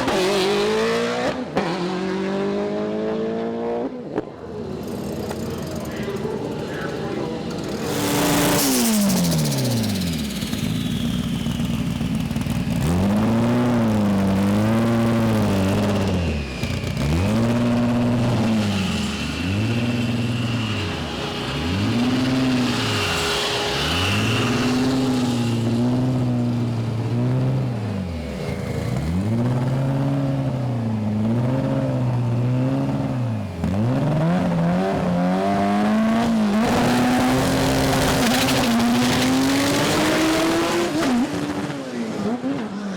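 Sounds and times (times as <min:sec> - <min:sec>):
racing car engine revving: 0:00.0 - 0:04.0, 0:05.8 - 0:42.9
engine winding down: 0:04.8 - 0:41.3.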